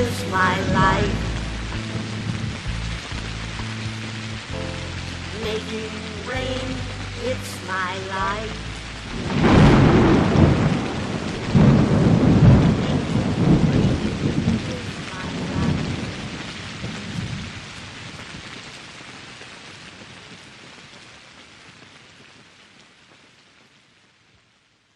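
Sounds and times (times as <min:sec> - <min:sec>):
rolling thunder: 0:00.0 - 0:03.7, 0:08.5 - 0:17.8
steady rain: 0:00.0 - 0:24.9.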